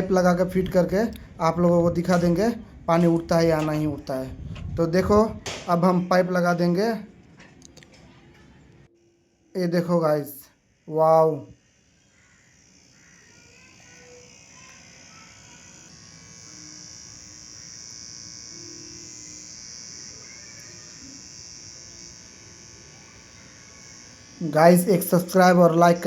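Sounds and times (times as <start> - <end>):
small electric pump motor buzzing: 0.0 - 4.4, 10.2 - 26.0.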